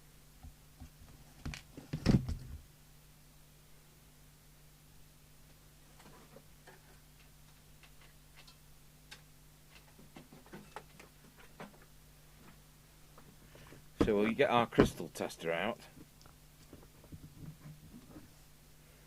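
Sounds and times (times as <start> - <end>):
low electrical hum: 0.0 - 19.0.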